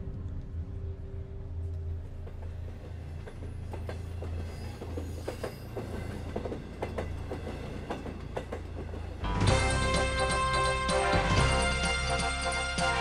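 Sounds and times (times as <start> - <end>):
low rumble: 0.0 - 2.3
faint high squeal: 4.4 - 6.2.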